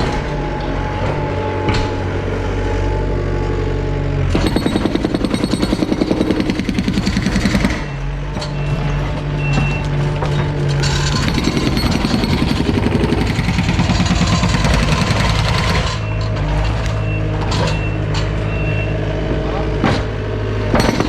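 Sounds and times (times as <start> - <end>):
diesel machinery engine drone: 0.0 - 21.0
rapid rattling and pounding: 4.4 - 7.8, 11.0 - 15.9, 20.8 - 21.0
reversing alarm beeps: 7.3 - 10.1, 15.9 - 19.1.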